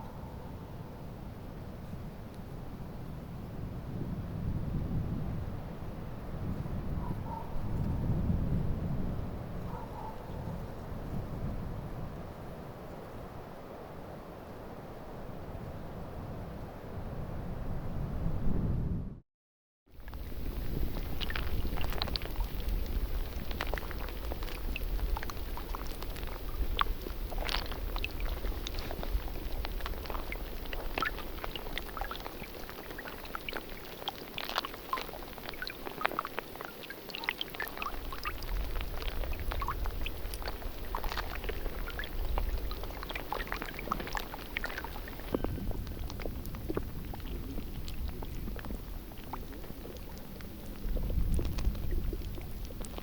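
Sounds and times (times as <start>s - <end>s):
water trickling and dripping: 19.9s - 53.0s.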